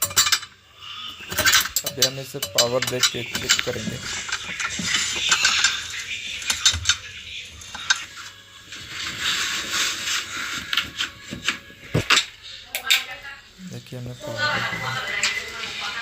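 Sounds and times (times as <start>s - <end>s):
metallic clinks and rattles: 0.0s - 0.5s, 1.3s - 5.8s.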